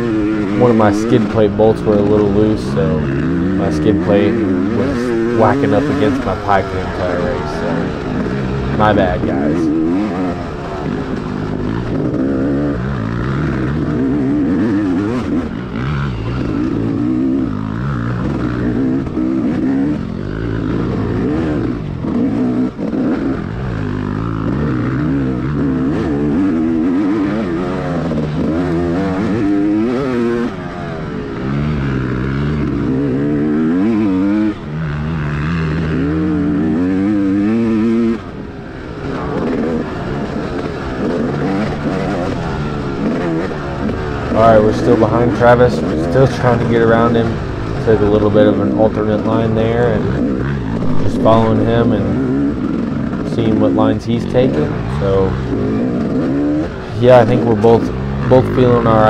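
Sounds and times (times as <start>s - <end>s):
dirt bike engine revving: 0.0s - 59.0s.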